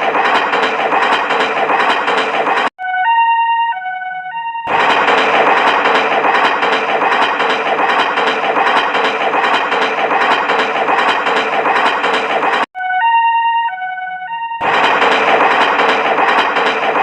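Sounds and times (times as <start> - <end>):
train clattering: 0.0 - 2.8, 4.7 - 12.7, 14.6 - 17.0
electronic tone tune: 12.8 - 14.6.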